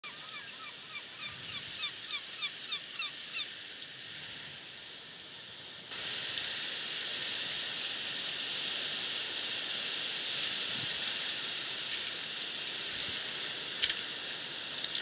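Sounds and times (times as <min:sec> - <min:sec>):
loud rushing hiss: 0:03.6 - 0:15.0
steady rushing noise: 0:03.6 - 0:15.0.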